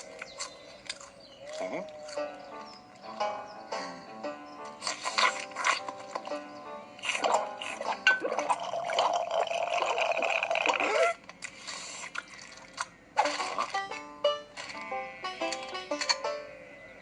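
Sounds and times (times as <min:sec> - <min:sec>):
light plucked music: 0:01.4 - 0:08.7, 0:13.2 - 0:17.0
cartoon liquid gurgle: 0:07.2 - 0:11.2.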